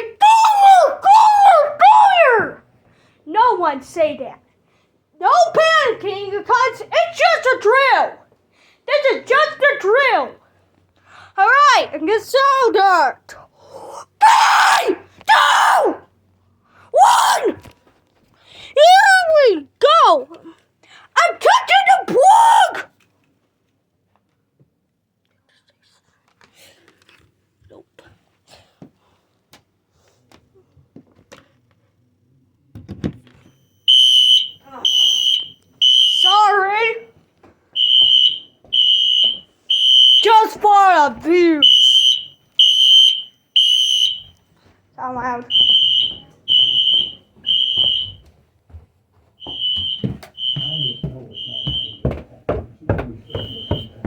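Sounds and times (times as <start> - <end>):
fire alarm horn pulses: 33.6 - 36.6, 37.8 - 40.3, 41.6 - 44.4, 45.5 - 48.2, 49.4 - 52.0, 53.3 - 54.0.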